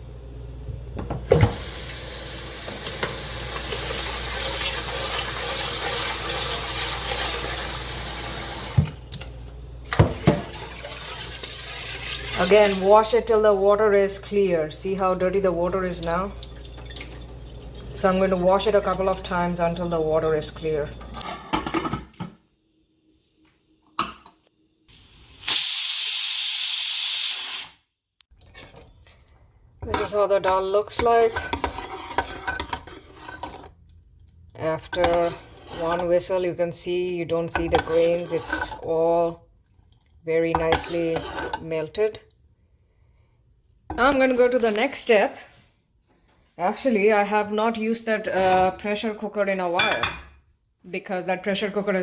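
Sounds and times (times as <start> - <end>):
pressure cooker whistle hissing: 24.9 - 27.8.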